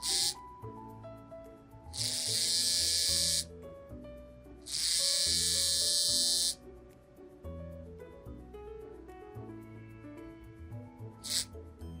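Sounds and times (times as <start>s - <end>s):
vibration motor buzzing: 0.0s - 0.4s, 2.0s - 3.5s, 4.7s - 6.6s, 11.2s - 11.5s
background music: 0.0s - 12.0s.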